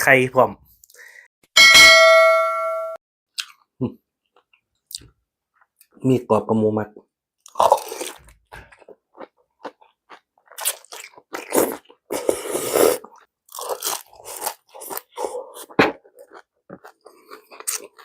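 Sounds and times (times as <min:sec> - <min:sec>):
crunchy chewing: 0:07.5 - 0:18.0.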